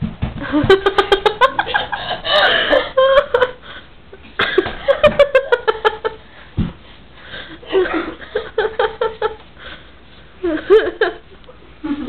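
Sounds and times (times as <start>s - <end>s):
person laughing hard: 0.4s - 3.6s, 4.4s - 6.2s, 7.6s - 9.4s, 10.4s - 12.0s.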